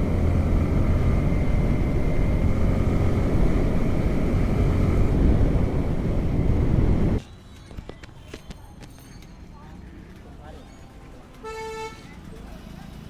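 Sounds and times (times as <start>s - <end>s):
motorcycle engine running: 0.0s - 7.2s
road and wind rush: 0.0s - 7.2s.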